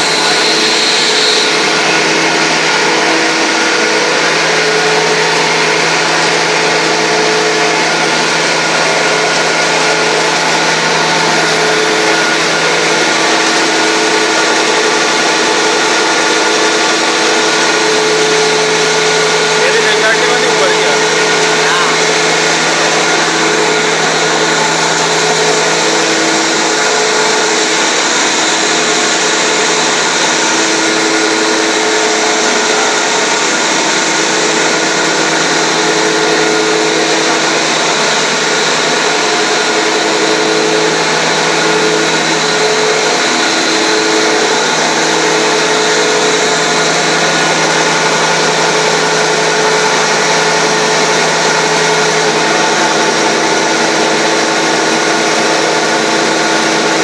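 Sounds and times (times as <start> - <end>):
grinder machine whirring: 0.0 - 57.0.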